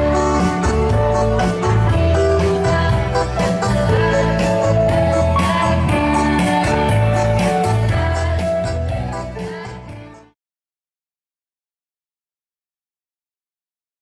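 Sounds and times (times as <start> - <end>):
instrumental music with steady beat: 0.0 - 10.3.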